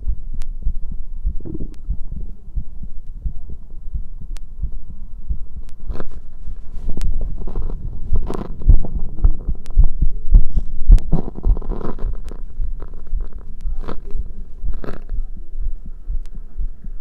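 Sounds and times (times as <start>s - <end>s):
heartbeat thumps: 0.0s - 17.0s
scraping and rustling: 5.9s - 8.7s.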